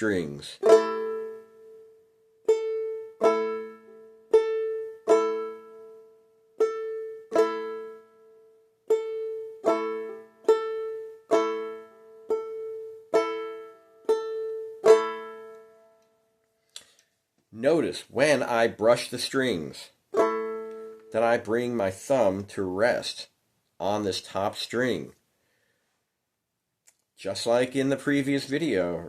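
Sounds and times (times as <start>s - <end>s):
banjolele strummed clawhammer style: 0.0s - 16.1s, 17.8s - 22.5s.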